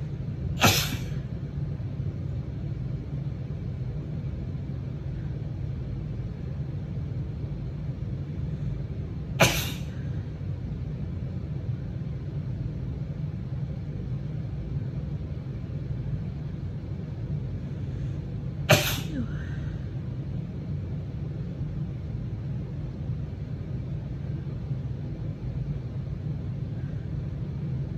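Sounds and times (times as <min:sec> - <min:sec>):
steady low rumble: 0:00.0 - 0:27.9
woman sneezing: 0:00.6 - 0:01.2, 0:09.4 - 0:10.0, 0:18.7 - 0:19.6.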